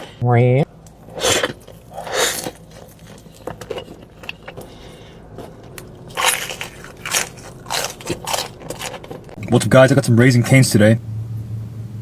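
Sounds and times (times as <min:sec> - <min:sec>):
loud crunching bite: 0:01.0 - 0:09.4.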